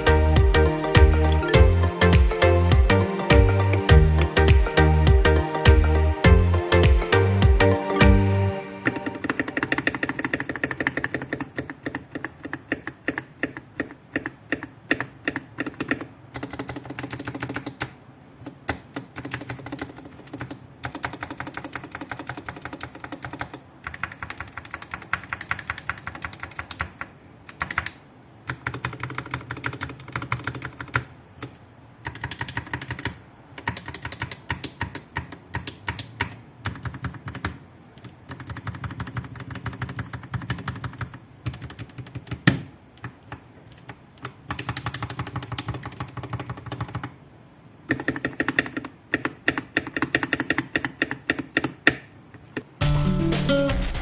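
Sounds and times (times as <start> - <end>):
mechanical keyboard typing: 0.0 - 47.2, 47.8 - 52.6.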